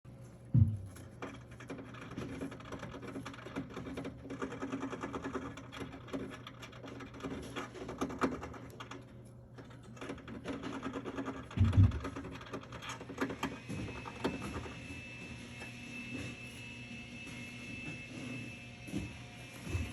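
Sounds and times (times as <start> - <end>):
pet scratching at cage: 0.9 - 19.9
vacuum cleaner whine: 13.0 - 19.9.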